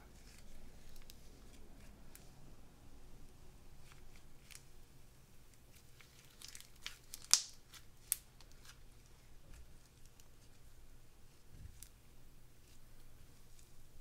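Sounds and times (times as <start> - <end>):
slime crackles and clicks: 6.0 - 8.8.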